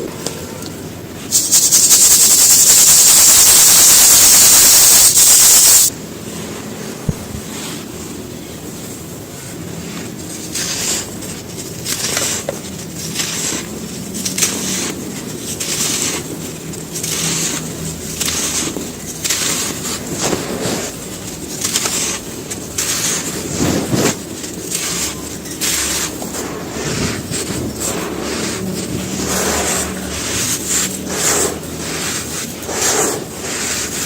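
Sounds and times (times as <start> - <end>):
soft gritty rustle: 7.2 - 34.0.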